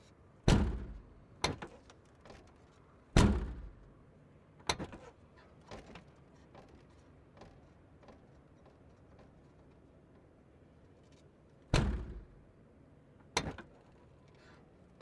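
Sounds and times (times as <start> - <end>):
car trunk lid thudding shut: 0.5 - 1.0, 3.2 - 3.7, 11.7 - 12.3.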